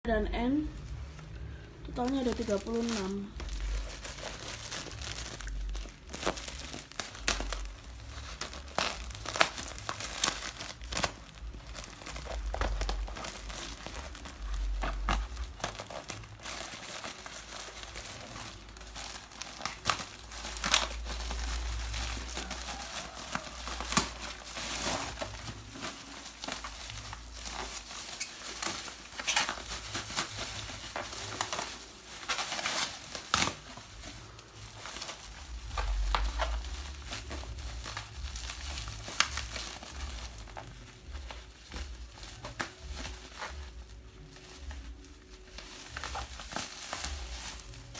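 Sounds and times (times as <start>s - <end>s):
packaging crinkling and tearing: 0.5s - 47.9s.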